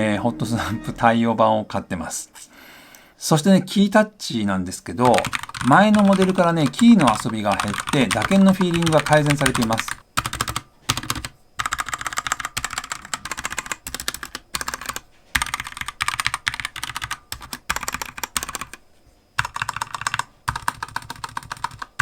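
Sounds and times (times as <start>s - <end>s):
mechanical keyboard typing: 5.0s - 18.8s, 19.4s - 22.0s.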